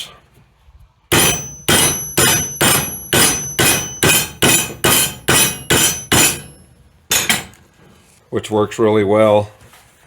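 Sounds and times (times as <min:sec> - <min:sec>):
hammer striking metal: 0:01.1 - 0:07.6.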